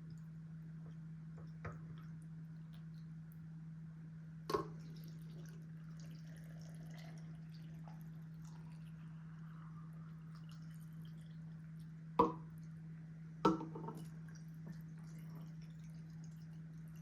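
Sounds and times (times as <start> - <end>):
steady low hum: 0.0 - 17.0
water trickling into jars: 4.5 - 12.9, 13.5 - 17.0.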